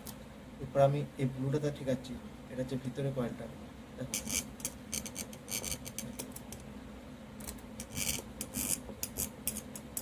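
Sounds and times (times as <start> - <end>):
low steady hum: 0.0 - 10.0
metal parts scraping and rubbing: 4.1 - 6.3, 7.8 - 10.0.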